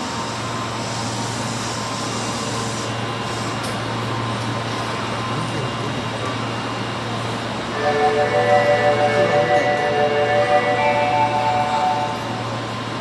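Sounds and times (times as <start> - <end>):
train equipment humming: 5.9 - 13.0.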